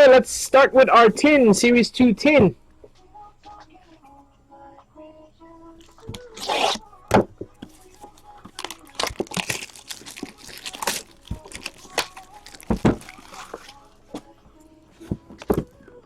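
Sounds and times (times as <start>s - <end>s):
packaging ripping open: 6.2s - 6.8s, 8.5s - 13.8s
wrapper crinkling and rustling: 7.6s - 14.0s.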